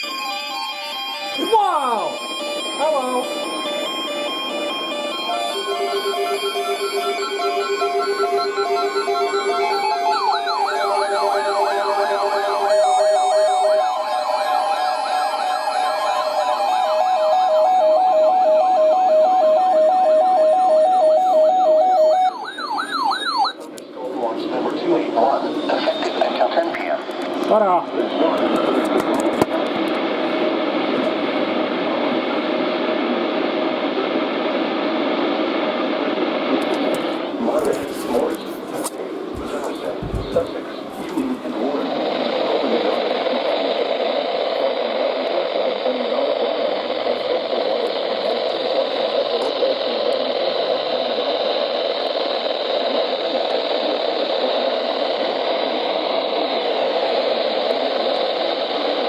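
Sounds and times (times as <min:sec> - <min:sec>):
radio static hiss: 0:23.4 - 0:59.0.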